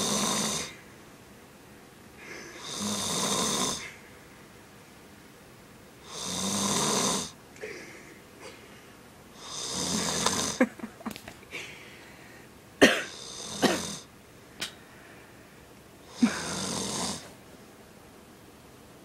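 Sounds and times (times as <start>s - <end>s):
man snoring: 0.0s - 0.8s, 2.2s - 4.0s, 6.0s - 7.4s, 9.4s - 10.7s, 13.0s - 14.1s, 16.0s - 17.3s.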